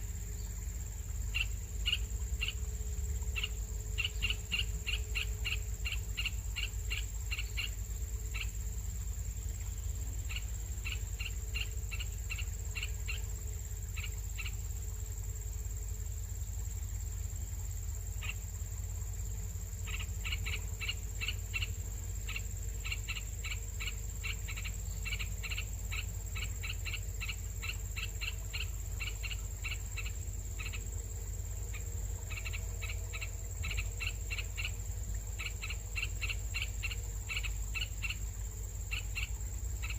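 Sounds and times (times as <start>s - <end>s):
bird chirping: 1.3s - 2.6s, 3.4s - 8.5s, 19.8s - 30.8s, 31.6s - 34.8s, 35.4s - 38.2s, 38.8s - 39.9s.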